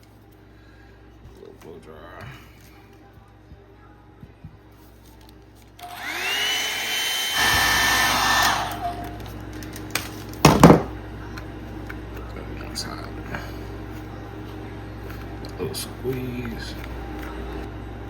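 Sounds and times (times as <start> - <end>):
blow dryer motor whine: 5.8 - 9.3.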